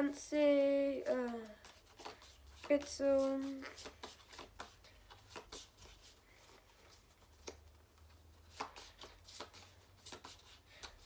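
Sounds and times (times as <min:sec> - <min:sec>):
cards tapping together: 0:01.4 - 0:06.2, 0:07.2 - 0:07.7, 0:08.5 - 0:11.0
trading cards being flipped: 0:01.6 - 0:06.2, 0:08.5 - 0:11.0.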